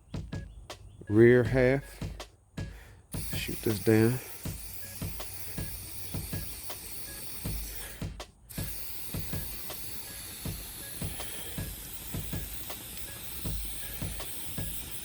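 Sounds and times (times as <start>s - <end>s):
aerosol spraying hiss: 3.1s - 15.0s.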